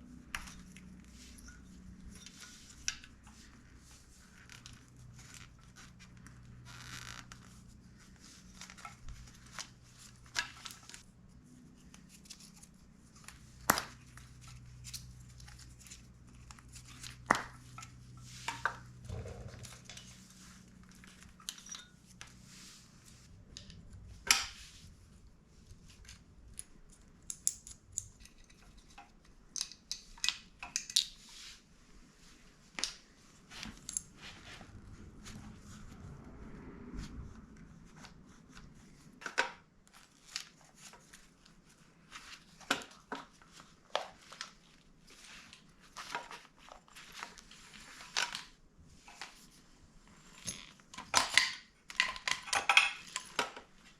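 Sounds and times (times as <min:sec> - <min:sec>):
low steady hum: 0:00.0 - 0:28.8
tools and metal parts clinking: 0:50.3 - 0:53.6.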